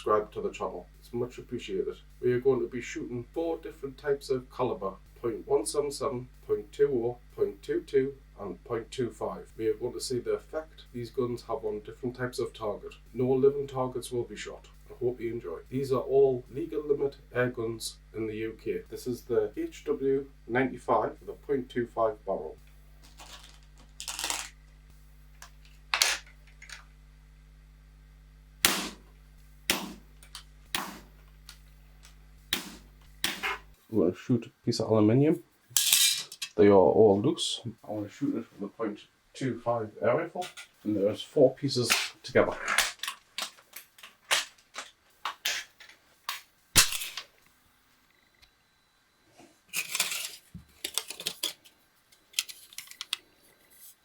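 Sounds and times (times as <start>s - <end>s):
air rifle shot: 28.6s - 29.0s.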